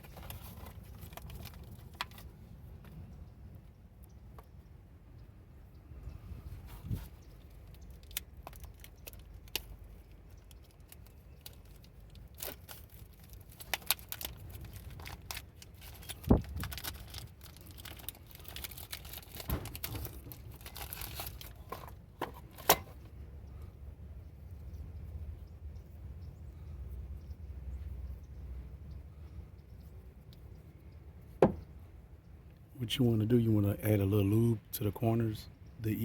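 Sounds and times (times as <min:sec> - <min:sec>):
packaging crinkling and tearing: 0:00.0 - 0:02.3, 0:07.4 - 0:22.7.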